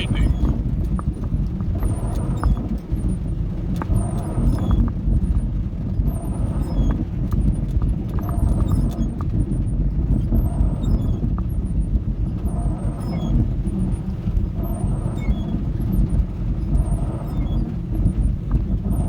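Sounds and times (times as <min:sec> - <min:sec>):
van engine and road drone: 0:00.0 - 0:19.0.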